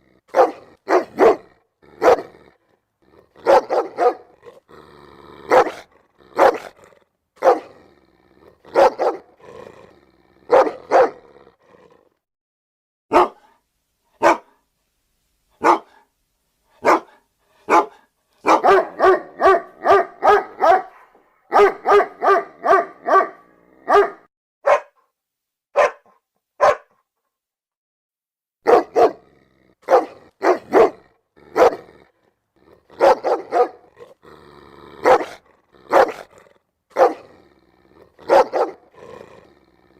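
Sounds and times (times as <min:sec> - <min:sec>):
dog barking: 0:00.3 - 0:02.4, 0:03.4 - 0:04.6, 0:05.5 - 0:06.8, 0:07.4 - 0:07.8, 0:08.6 - 0:09.4, 0:10.5 - 0:11.3, 0:13.1 - 0:13.6, 0:14.2 - 0:14.6, 0:15.6 - 0:16.1, 0:16.8 - 0:25.0, 0:25.7 - 0:27.0, 0:28.6 - 0:29.2, 0:29.8 - 0:32.0, 0:32.9 - 0:34.2, 0:35.0 - 0:37.3, 0:38.1 - 0:39.0.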